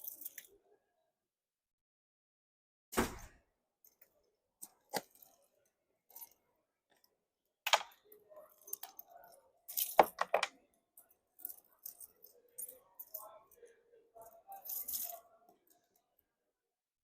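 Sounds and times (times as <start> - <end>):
small hard objects clicking: 8.6 - 10.6.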